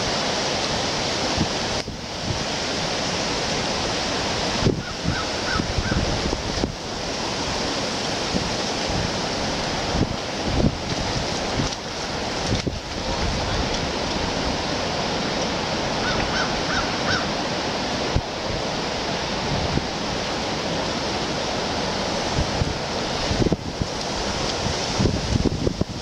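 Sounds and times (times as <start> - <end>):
rushing water: 0.0 - 26.0
wind buffeting microphone: 1.1 - 26.0
bird calling: 4.8 - 6.1, 16.0 - 17.4.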